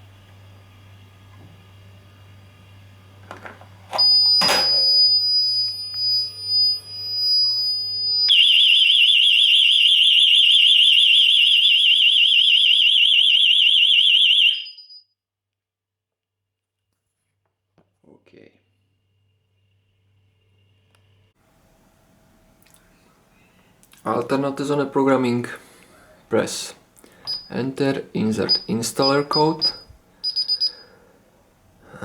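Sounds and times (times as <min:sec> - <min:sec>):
loud high steady alarm tone: 0:04.0 - 0:15.0, 0:28.4 - 0:30.9
fast-warbling siren: 0:07.4 - 0:15.0.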